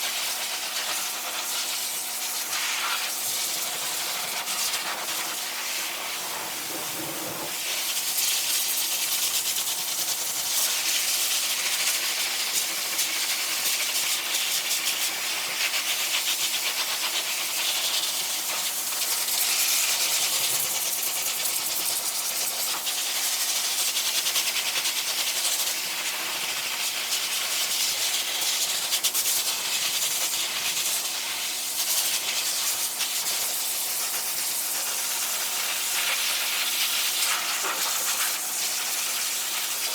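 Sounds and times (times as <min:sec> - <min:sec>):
force dryer blowing air: 0:03.5 - 0:07.7.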